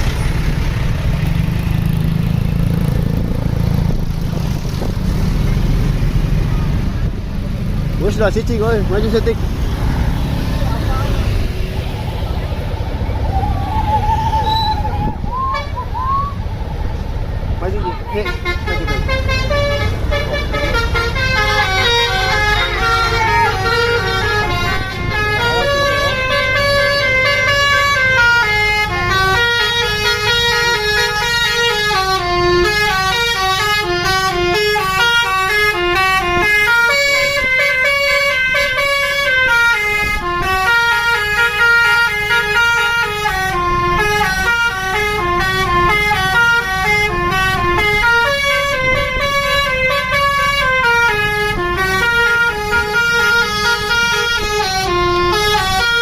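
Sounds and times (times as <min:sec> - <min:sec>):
low engine rumble: 0:00.0 - 0:56.0
bus musical horn melody: 0:14.4 - 0:16.4, 0:18.0 - 0:56.0.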